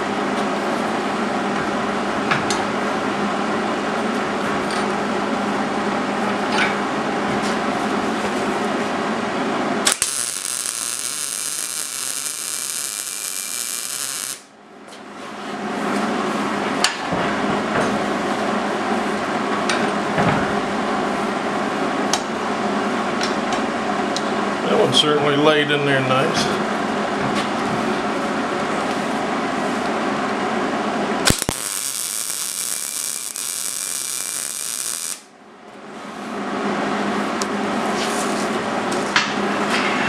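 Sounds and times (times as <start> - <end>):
arc welder crackling hiss: 9.8 - 14.5, 31.2 - 35.3.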